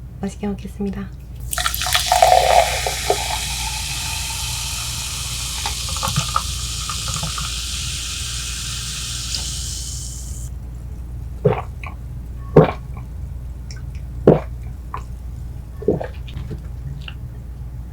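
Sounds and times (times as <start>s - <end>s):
liquid pouring into a glass: 1.4s - 10.5s.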